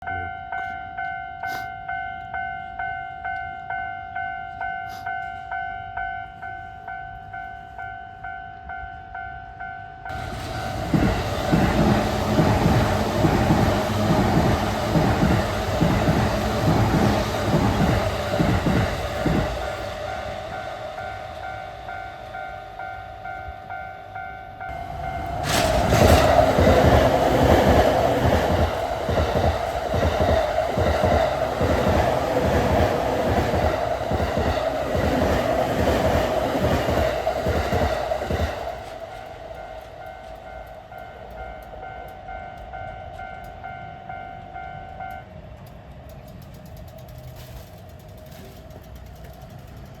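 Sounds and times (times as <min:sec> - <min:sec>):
railroad crossing bell ringing: 0:00.0 - 0:45.6
train wheels clacking: 0:10.1 - 0:50.0.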